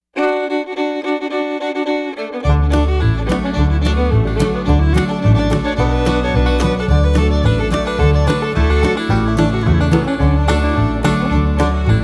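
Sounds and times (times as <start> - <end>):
fiddle melody: 0.0 - 12.0
bass line: 2.4 - 12.0.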